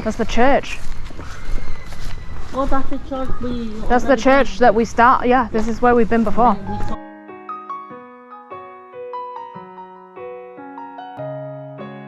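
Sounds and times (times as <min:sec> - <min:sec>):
piano notes and chords: 0:06.1 - 0:12.0.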